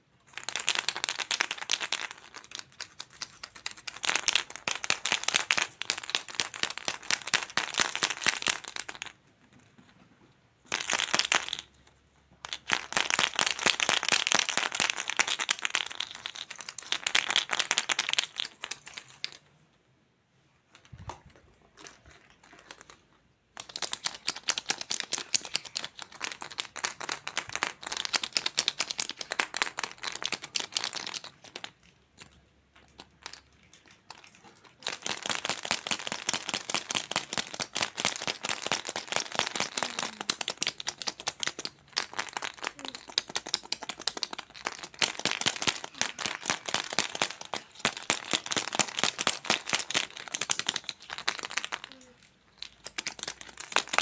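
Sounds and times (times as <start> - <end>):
plastic crinkling and rustling: 20.7 - 54.0.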